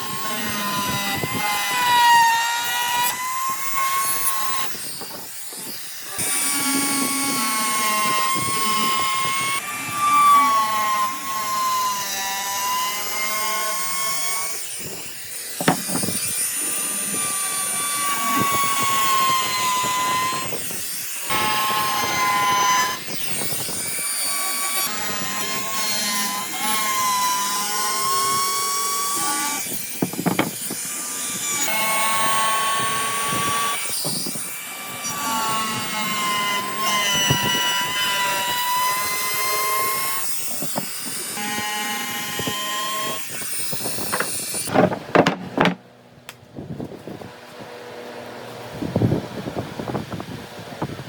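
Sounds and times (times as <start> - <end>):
power tool cutting wood: 0.0 - 45.8
sharp knocks: 15.6 - 16.1, 44.1 - 45.8.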